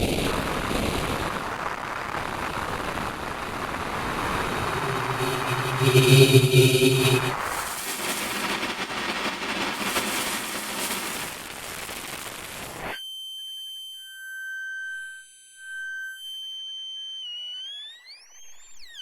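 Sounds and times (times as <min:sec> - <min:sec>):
synthesized noise wash: 0:03.6 - 0:11.6
high sine-like tones: 0:03.9 - 0:11.2
low synth tone: 0:04.1 - 0:07.6.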